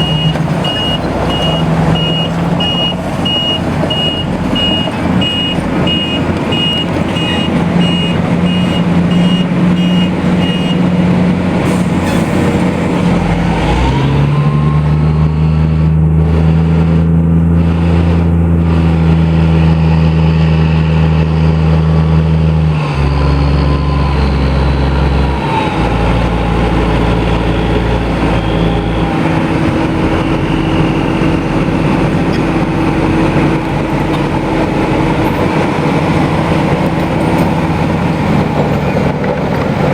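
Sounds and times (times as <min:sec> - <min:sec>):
reversing alarm beeping: 0:00.0 - 0:10.9, 0:22.8 - 0:33.3
truck diesel engine running: 0:00.0 - 0:39.9.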